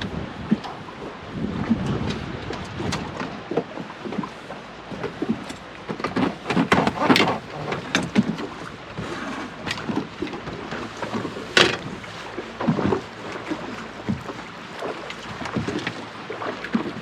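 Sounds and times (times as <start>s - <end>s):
water slapping against boat: 5.0s - 17.0s
wind buffeting microphone: 6.3s - 17.0s.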